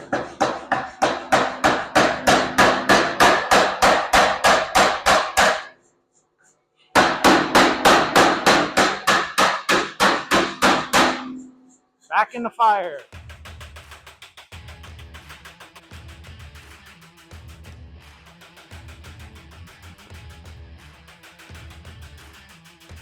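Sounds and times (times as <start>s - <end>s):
hammer blows on hot steel: 7.0s - 11.5s
anvil ringing: 7.1s - 11.6s.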